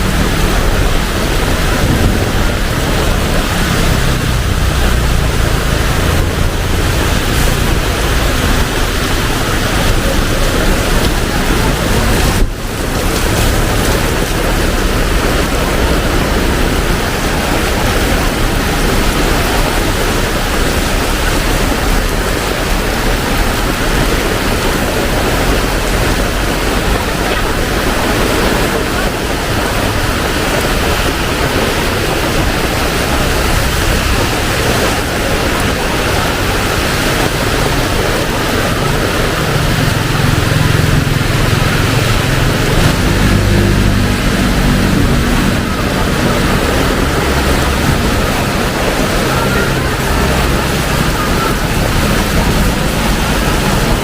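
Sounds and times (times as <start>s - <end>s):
heavy rain pouring: 0.0s - 54.0s
vehicle engine hum: 0.0s - 54.0s.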